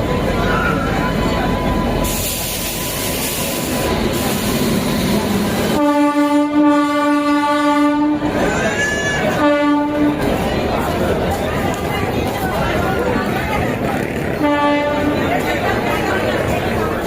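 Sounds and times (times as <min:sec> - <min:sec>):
train rumble and wheel clatter: 0:00.0 - 0:17.0
locomotive horn blast: 0:05.7 - 0:08.4, 0:09.3 - 0:10.3, 0:14.4 - 0:15.2.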